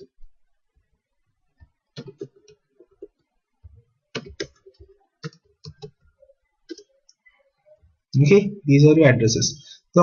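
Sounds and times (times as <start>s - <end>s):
computer keys typing: 1.6s - 7.2s.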